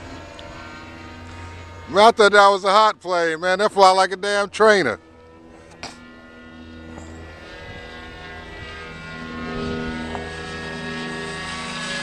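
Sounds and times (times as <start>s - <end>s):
model airplane engine buzzing: 0.0s - 12.0s.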